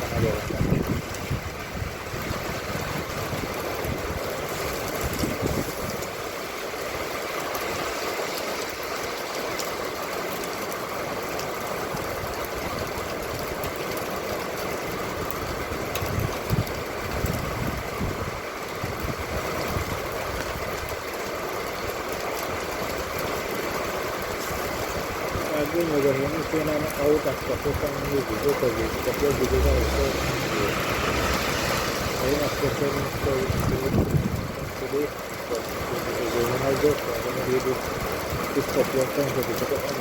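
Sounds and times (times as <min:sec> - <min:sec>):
low rumbles: 0:00.0 - 0:06.6, 0:24.2 - 0:40.0.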